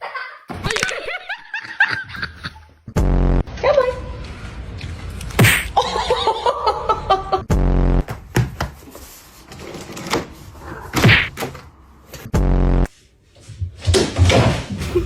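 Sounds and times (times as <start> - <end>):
low buzzy blasts: 3.0 - 3.5, 7.5 - 8.1, 12.3 - 12.9
comedy knocks and thumps: 11.0 - 11.4.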